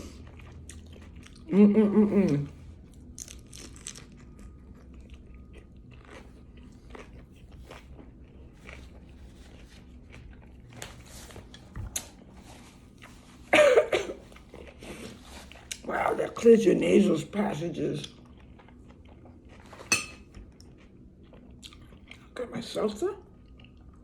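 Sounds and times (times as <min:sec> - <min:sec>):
chewing and crunching salad: 0:00.0 - 0:13.5, 0:14.1 - 0:24.0.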